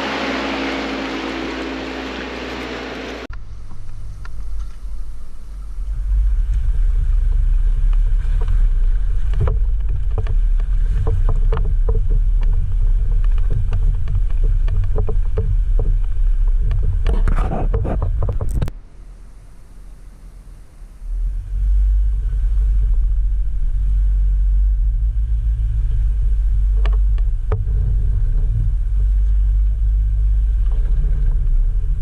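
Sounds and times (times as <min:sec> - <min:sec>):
vehicle rumbling off-road: 0:00.0 - 0:32.0
knocks and rattles: 0:08.3 - 0:18.7.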